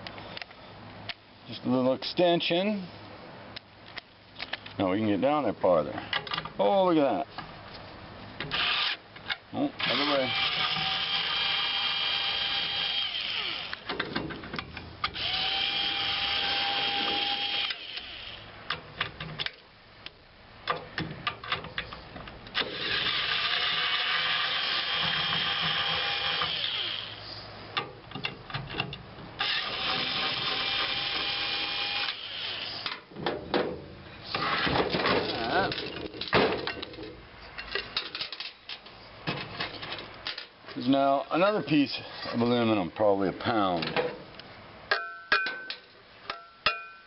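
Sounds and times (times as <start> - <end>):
power drill whining: 9.8 - 13.9, 15.2 - 18.4, 22.6 - 27.2, 29.4 - 32.9
metal parts knocking and rattling: 34.6 - 40.5.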